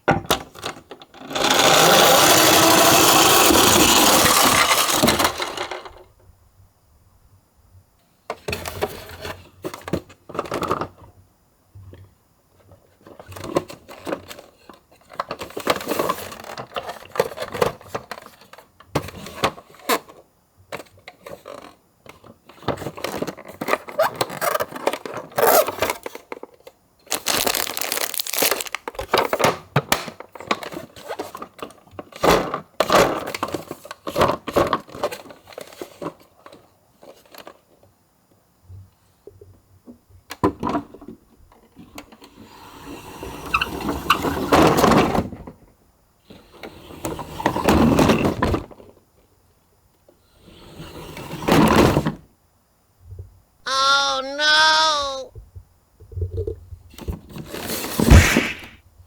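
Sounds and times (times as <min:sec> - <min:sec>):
toy cars rattling in a box: 0:01.2 - 0:05.8, 0:27.1 - 0:28.8.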